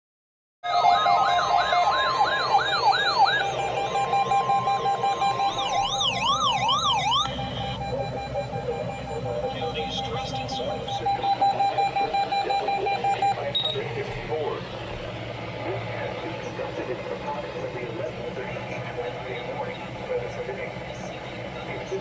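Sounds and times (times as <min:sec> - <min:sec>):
electronic siren warbling: 0:00.6 - 0:14.1
steady beeping tone: 0:00.6 - 0:22.0.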